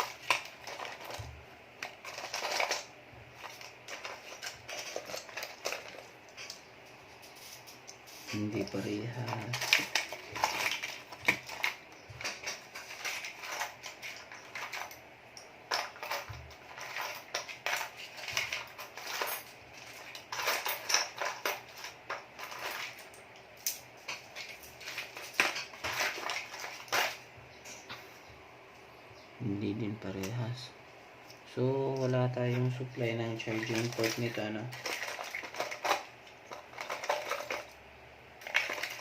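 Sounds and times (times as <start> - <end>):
small hard parts clattering: 0.0 - 28.0, 31.8 - 37.8, 38.4 - 39.0.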